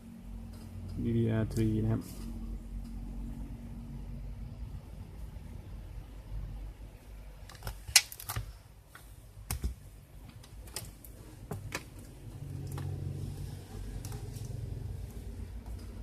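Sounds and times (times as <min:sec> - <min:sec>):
low background hum: 0:00.0 - 0:16.0
clicks of laptop parts: 0:07.4 - 0:12.9.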